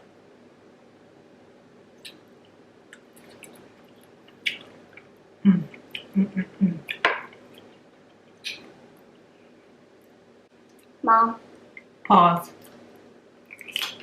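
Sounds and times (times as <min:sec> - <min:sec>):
person humming mm: 0:05.4 - 0:07.0.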